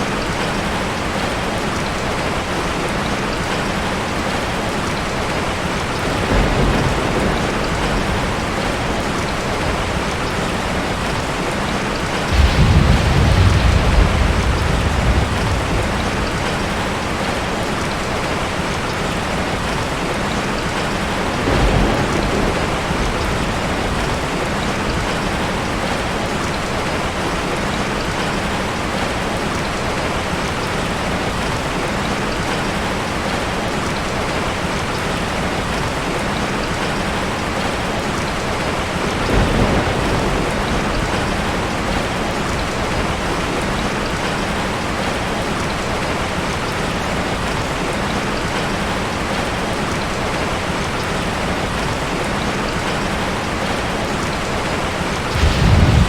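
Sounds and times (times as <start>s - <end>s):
steady rain falling: 0.0s - 56.0s
low rumbles of thunder: 5.9s - 20.0s, 20.6s - 27.2s, 39.0s - 44.3s, 55.2s - 56.0s.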